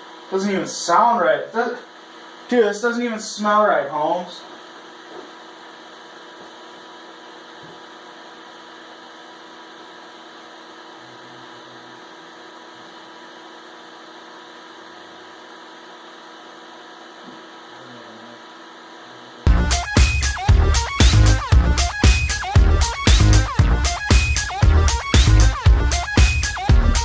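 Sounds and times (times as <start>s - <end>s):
fan-like hiss: 0.0s - 21.5s
electrical hum: 0.0s - 27.0s
steady electronic tones: 19.5s - 27.0s.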